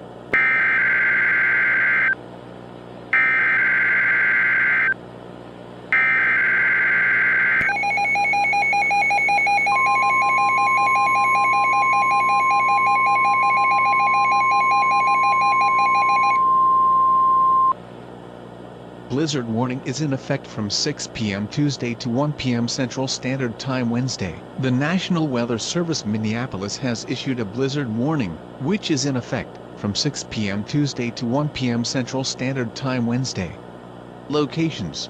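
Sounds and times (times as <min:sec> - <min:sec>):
pulsing two-tone attention signal: 0:00.4 - 0:02.2, 0:03.2 - 0:05.0, 0:06.0 - 0:17.8
steady single-pitch alert tone: 0:00.4 - 0:02.2, 0:03.2 - 0:05.0, 0:05.9 - 0:17.8.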